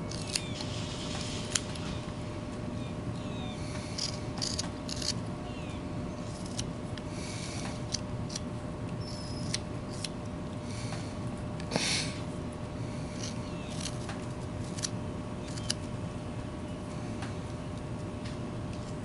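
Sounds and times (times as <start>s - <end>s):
faint steady hum: 0.0s - 19.0s
knife scraping wood: 3.8s - 5.2s, 6.3s - 6.7s.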